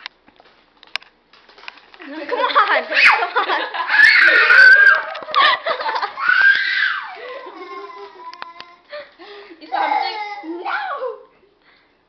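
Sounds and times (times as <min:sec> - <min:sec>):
high-pitched shrieking and giggling: 0:02.9 - 0:05.3.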